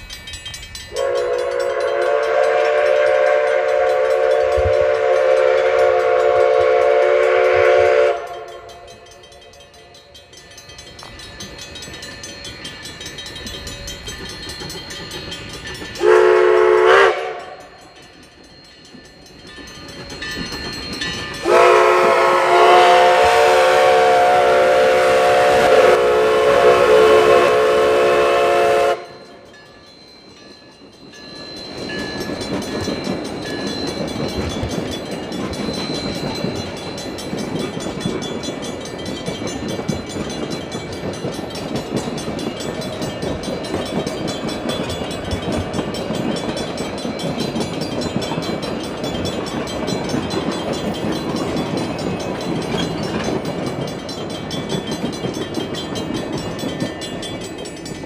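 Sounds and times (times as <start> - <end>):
train rumbling past: 0.0 - 58.0
wheels clattering on rails: 0.0 - 58.0
steam locomotive whistle: 0.9 - 9.5, 16.0 - 17.7, 21.4 - 29.5.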